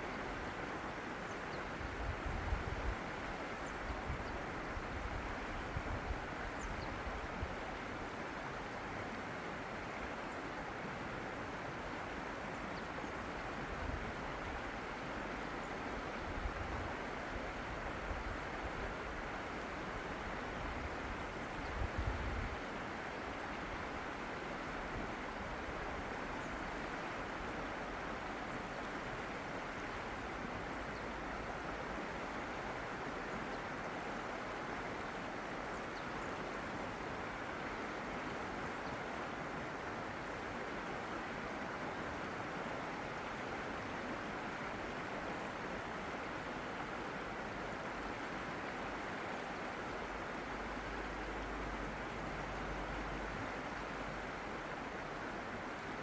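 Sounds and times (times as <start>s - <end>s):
running water rushing: 13.2s - 56.0s.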